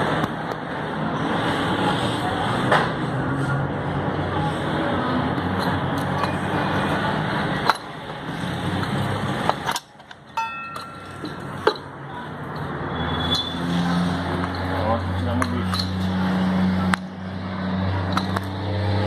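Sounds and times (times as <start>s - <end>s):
short metallic ring: 10.4s - 11.2s.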